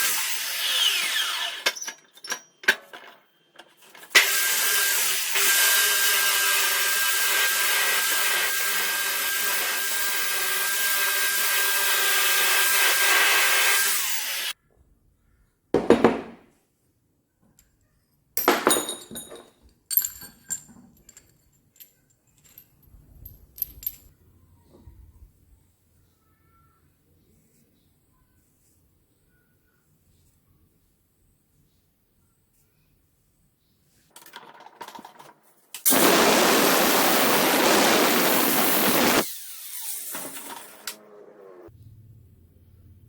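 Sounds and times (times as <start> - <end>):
electric drill whining: 0.0 - 1.8, 4.2 - 14.6, 35.9 - 41.7
clicks and rattles of handling: 34.1 - 35.9.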